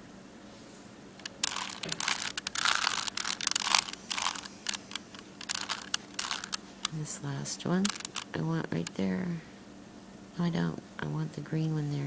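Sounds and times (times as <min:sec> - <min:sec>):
puzzle cube clicking and scraping: 0:01.2 - 0:07.0, 0:07.8 - 0:08.4.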